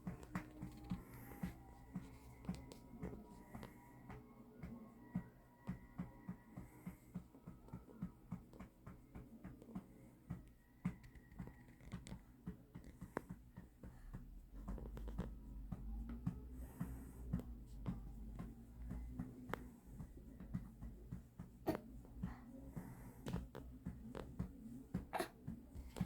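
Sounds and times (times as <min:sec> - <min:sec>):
soft patting on baby's back: 0:00.0 - 0:26.0
baby breathing: 0:25.1 - 0:25.4.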